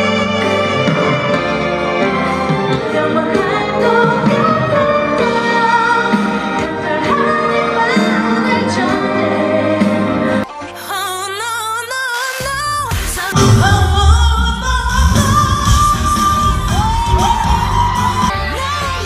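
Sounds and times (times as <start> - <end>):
band accompaniment: 0.0 - 7.0, 13.2 - 19.0
woman singing a ballad: 2.7 - 19.0.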